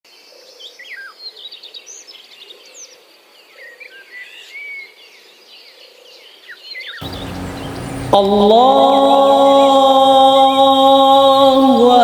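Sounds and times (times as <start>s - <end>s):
small birds chirping: 6.2s - 12.0s.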